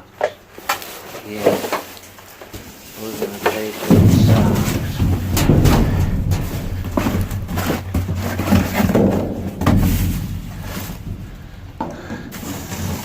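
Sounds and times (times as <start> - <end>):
rummaging through trash: 0.1 - 13.0
steady low hum: 3.9 - 12.4.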